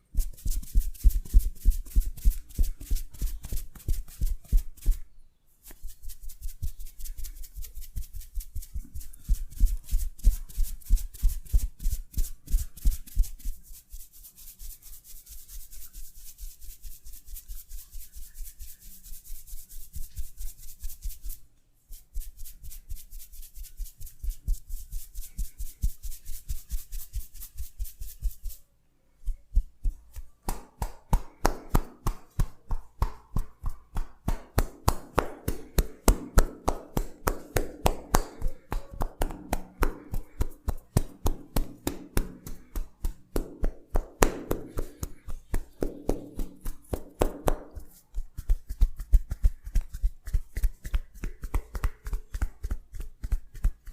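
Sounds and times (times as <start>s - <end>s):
hand strikes of head massage: 29.3s - 53.9s.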